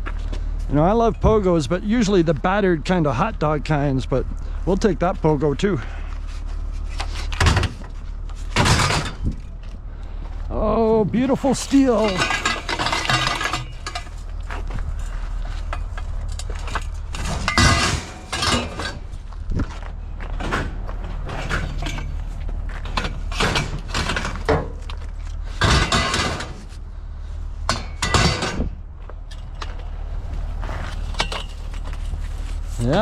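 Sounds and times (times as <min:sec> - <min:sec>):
steady low hum: 0:00.0 - 0:33.0
scrap metal clanking: 0:05.8 - 0:09.7, 0:11.2 - 0:26.8, 0:27.6 - 0:29.9, 0:30.5 - 0:33.0.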